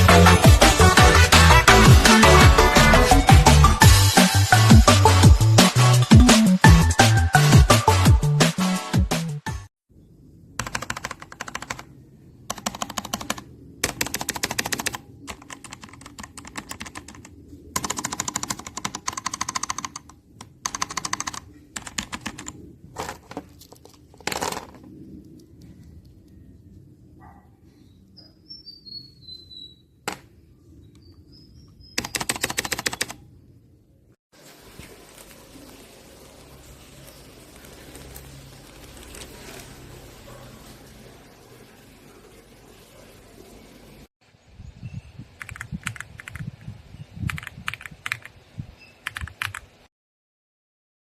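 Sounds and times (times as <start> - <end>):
mechanical keyboard keys clattering: 10.6 - 11.9, 12.5 - 24.8, 32.0 - 33.2, 45.4 - 46.5, 47.3 - 48.3, 49.0 - 49.7
faint bird chirps: 25.4 - 33.2.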